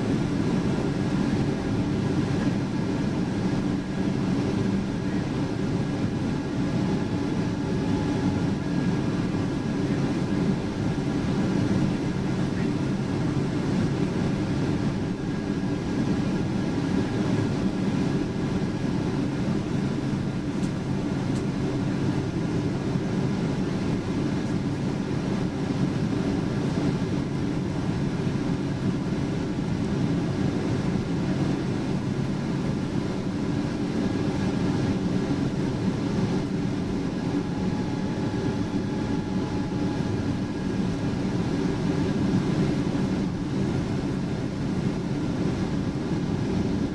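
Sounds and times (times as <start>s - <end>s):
airplane cabin engine rumble: 0.0s - 46.9s.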